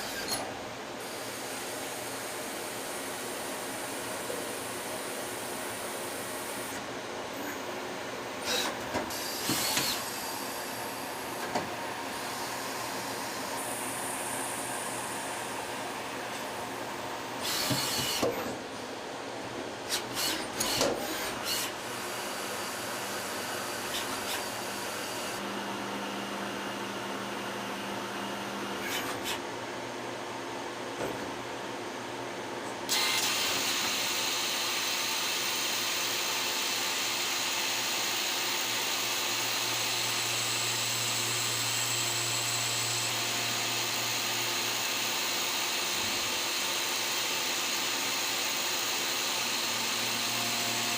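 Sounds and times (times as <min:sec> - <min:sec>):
lathe machining noise: 0:08.4 - 0:18.3, 0:32.9 - 0:50.9.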